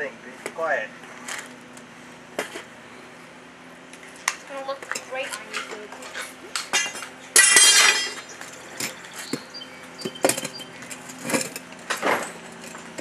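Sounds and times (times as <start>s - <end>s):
metal clanging and clinking: 4.9s - 9.1s, 10.0s - 13.0s.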